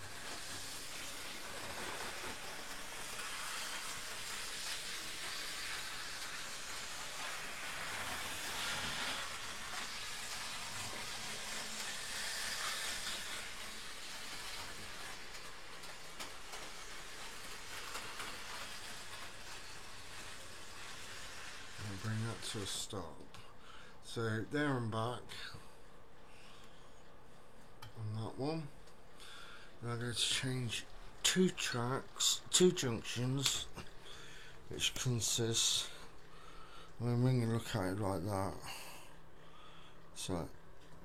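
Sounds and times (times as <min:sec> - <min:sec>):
model train running on track: 0:00.0 - 0:22.9
steady hiss: 0:00.0 - 0:41.0.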